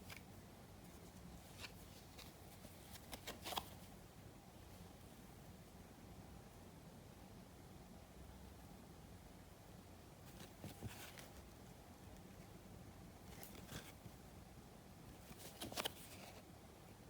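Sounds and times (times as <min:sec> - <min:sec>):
trading cards rustling and clicking: 0:01.4 - 0:03.9, 0:15.3 - 0:16.4.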